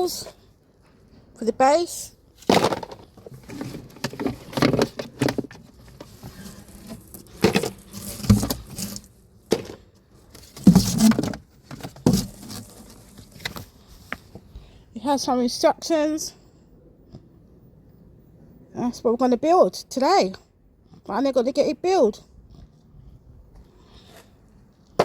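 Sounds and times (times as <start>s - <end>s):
packaging rustling and clatter: 2.4s - 14.3s.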